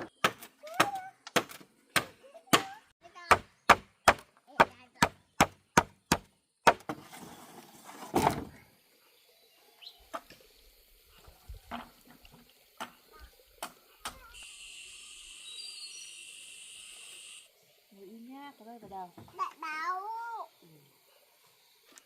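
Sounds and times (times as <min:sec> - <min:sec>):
tool striking wood: 0:03.3 - 0:07.0
steady hiss: 0:07.4 - 0:22.0.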